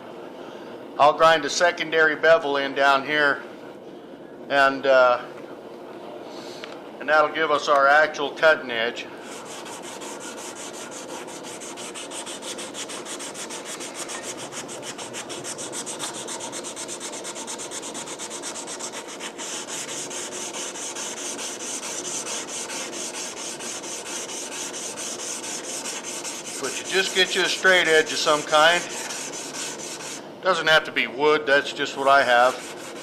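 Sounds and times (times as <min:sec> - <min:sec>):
sandpaper rubbing on steel blade: 0:09.2 - 0:30.2, 0:32.4 - 0:33.0.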